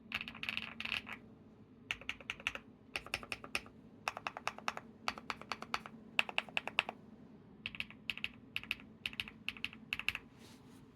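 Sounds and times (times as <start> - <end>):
mechanical keyboard typing: 0.1 - 1.2, 1.9 - 7.0, 7.7 - 10.3.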